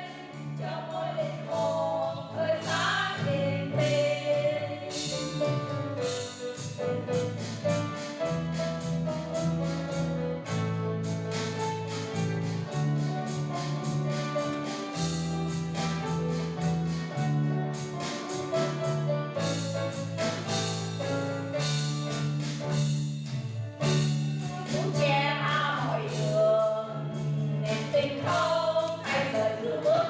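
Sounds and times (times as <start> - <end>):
vocal quartet singing gospel: 0.0 - 6.4, 24.4 - 30.0
instrumental accompaniment with beat: 0.0 - 30.0.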